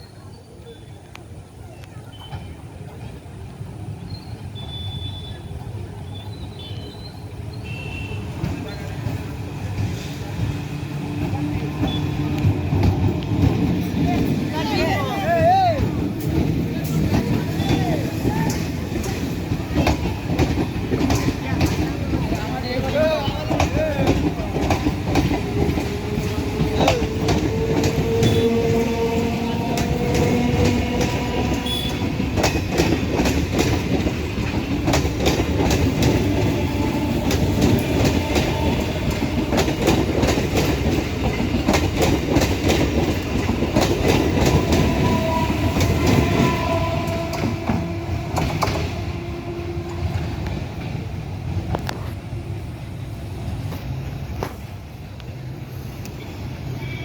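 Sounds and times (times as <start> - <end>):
train wheels clattering over rail joints: 8.3 - 52.2.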